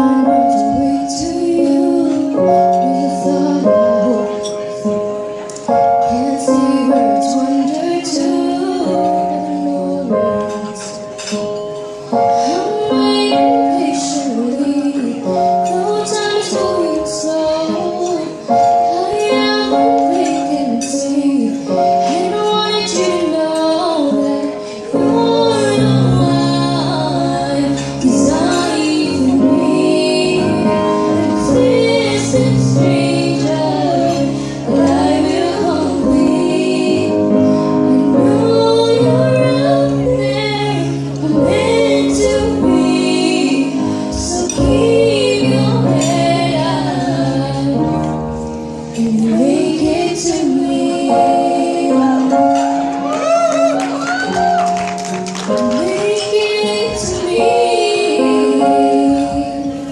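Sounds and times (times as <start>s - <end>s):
women singing slow song: 0.0s - 11.7s, 12.3s - 54.7s, 55.6s - 59.9s
bass: 25.0s - 59.9s.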